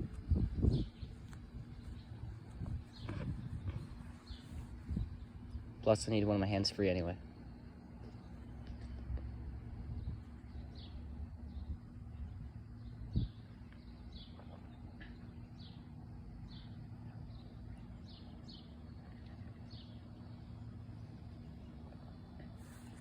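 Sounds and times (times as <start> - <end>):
bird chirping: 0.0 - 6.2
low outdoor hum: 0.0 - 23.0.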